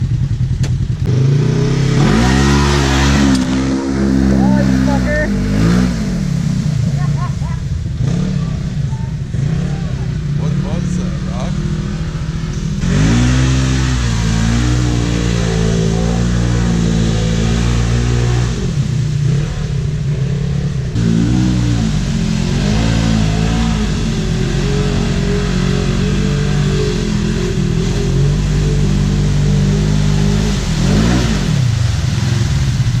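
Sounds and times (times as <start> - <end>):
utv engine revving: 0.0 - 33.0.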